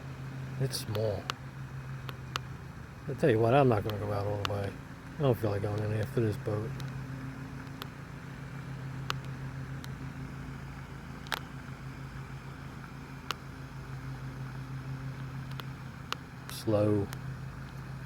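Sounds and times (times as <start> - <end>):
low mechanical hum: 0.0 - 18.0
faint sharp clicks: 2.0 - 2.5, 3.8 - 6.0, 6.7 - 7.0, 7.6 - 8.0, 9.0 - 10.0, 11.2 - 11.5, 13.2 - 13.4, 15.2 - 17.9.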